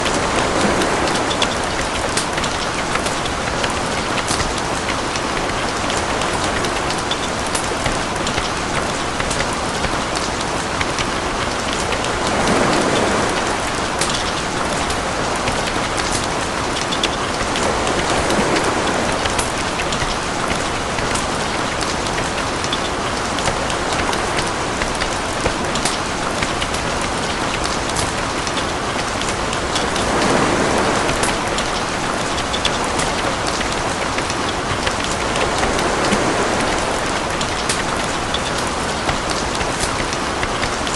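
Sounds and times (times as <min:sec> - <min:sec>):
raindrops ticking on hard surface: 0:00.0 - 0:40.9
steady rain: 0:00.0 - 0:40.9.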